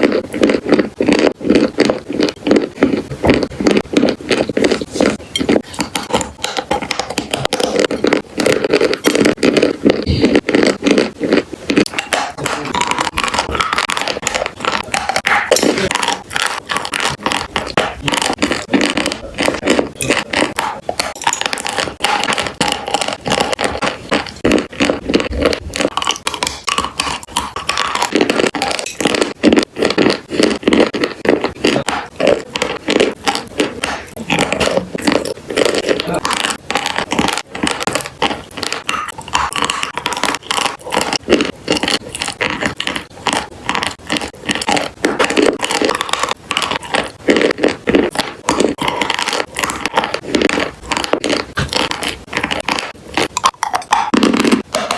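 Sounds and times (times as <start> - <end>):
chalk and clay crunching: 0.0 - 54.9.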